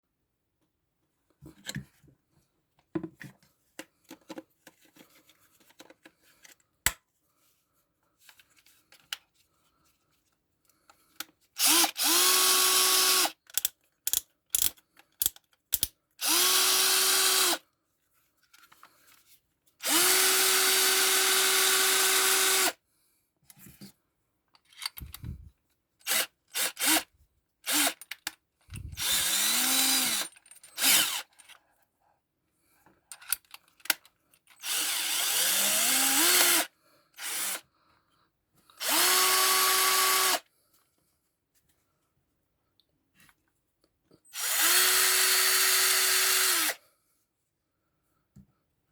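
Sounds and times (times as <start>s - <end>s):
cordless drill whining: 11.6s - 13.4s, 16.2s - 17.6s, 19.8s - 22.8s, 25.0s - 25.5s, 26.1s - 27.1s, 27.7s - 28.0s, 28.7s - 31.3s, 34.6s - 37.6s, 38.8s - 40.4s, 44.3s - 46.8s.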